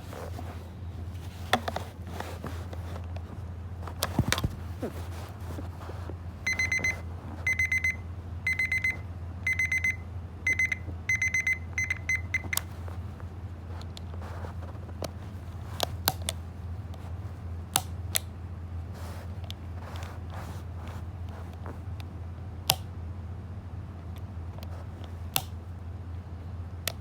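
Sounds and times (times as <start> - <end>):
steady low hum: 0.0 - 27.0
alarm clock beeping: 6.4 - 12.7.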